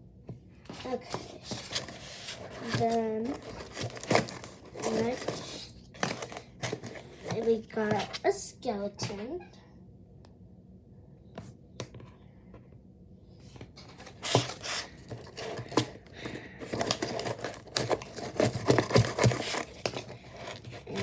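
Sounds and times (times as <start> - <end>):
toy rustling and crinkling: 0.7 - 8.4, 13.8 - 21.0.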